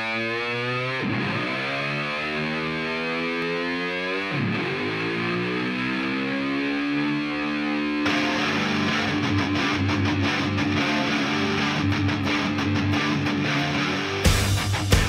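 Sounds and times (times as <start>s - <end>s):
distorted electric slide guitar: 0.0s - 15.0s
band with strummed guitar: 7.8s - 15.0s.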